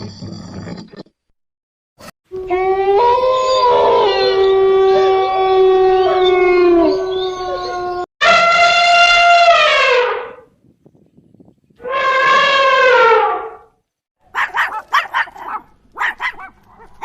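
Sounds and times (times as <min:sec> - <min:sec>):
canines howling together: 0:02.4 - 0:08.1.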